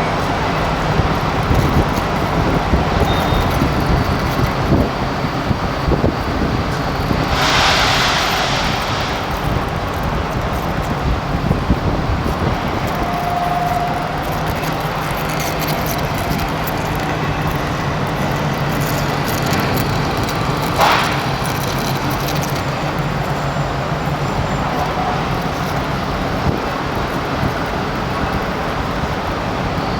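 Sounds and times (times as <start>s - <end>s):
short loud hiss: 7.0s - 10.4s.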